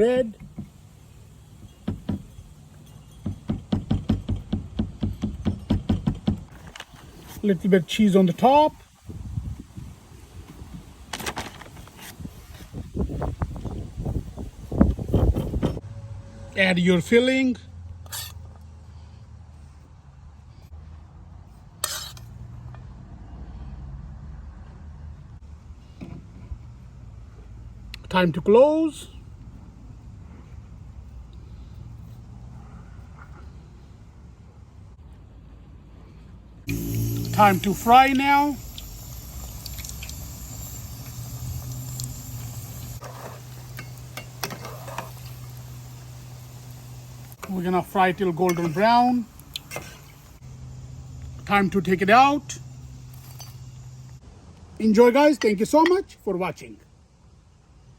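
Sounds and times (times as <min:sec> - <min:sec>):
low steady hum: 0:36.6 - 0:54.3
bread frying in hot oil: 0:36.7 - 0:51.0.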